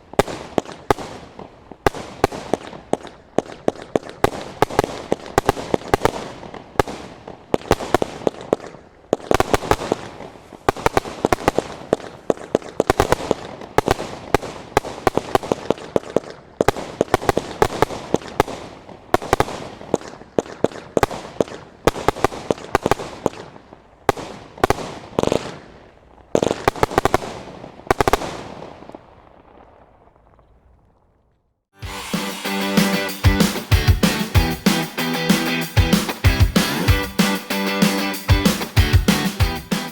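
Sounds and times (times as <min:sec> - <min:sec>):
fireworks barrage bangs: 0:00.0 - 0:25.7.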